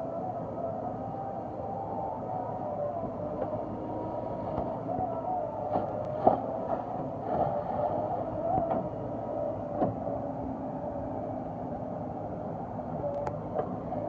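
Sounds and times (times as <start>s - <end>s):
engine running: 0.0s - 14.0s
wavering whine: 0.0s - 14.0s.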